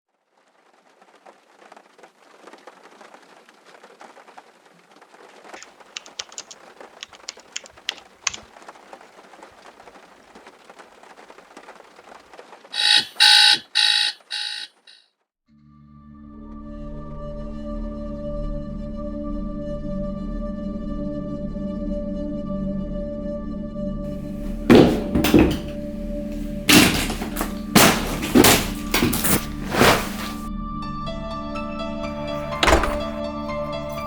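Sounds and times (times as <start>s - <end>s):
sharp clicks: 6.0s - 8.5s
electronic alarm beeping: 12.8s - 15.0s
faint rustling: 24.1s - 30.5s.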